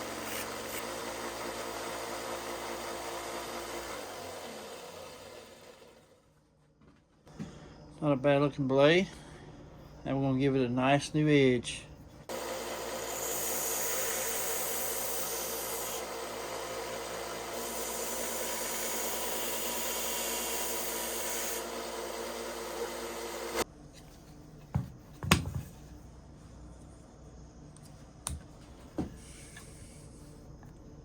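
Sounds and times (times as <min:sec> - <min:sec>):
motor hum: 0:12.3 - 0:23.6.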